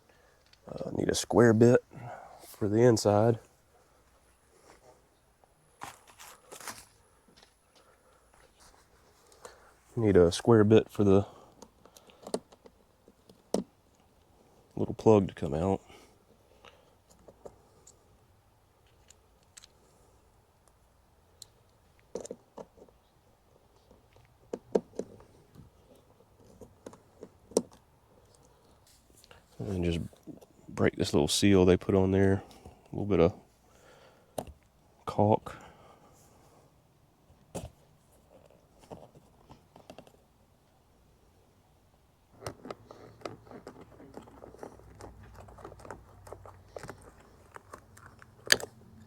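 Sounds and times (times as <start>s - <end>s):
small clicks taps and scrapes: 11.5s - 14.2s, 21.4s - 23.0s, 23.8s - 29.5s, 38.3s - 40.2s, 42.4s - 49.0s.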